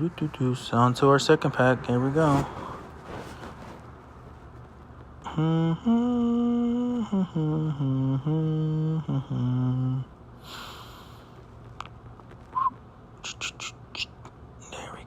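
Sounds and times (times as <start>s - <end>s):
man humming a tune: 5.2s - 10.2s, 12.6s - 14.1s
hiss: 10.4s - 11.3s.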